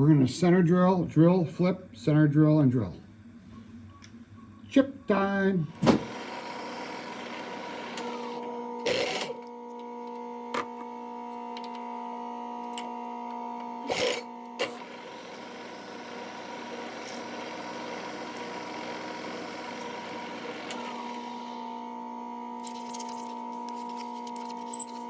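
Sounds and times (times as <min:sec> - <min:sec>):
machine spindle running: 0:13.9 - 0:21.9.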